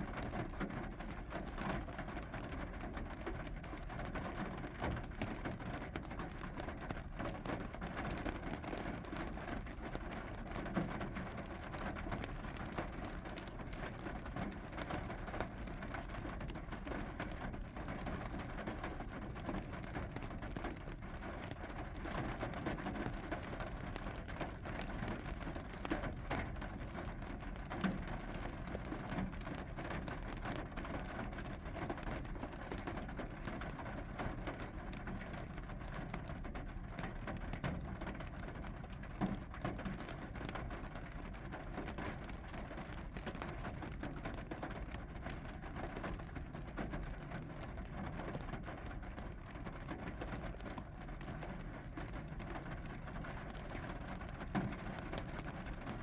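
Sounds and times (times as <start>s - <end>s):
rain falling steadily: 0.0s - 56.0s.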